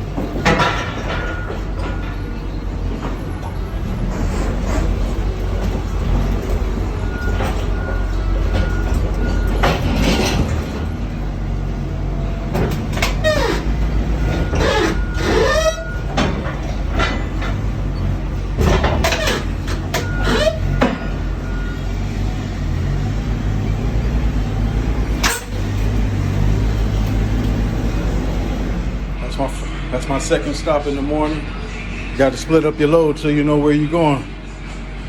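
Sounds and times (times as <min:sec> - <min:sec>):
truck engine idling: 0:00.0 - 0:35.0
short squeals: 0:13.0 - 0:18.1, 0:19.0 - 0:21.9.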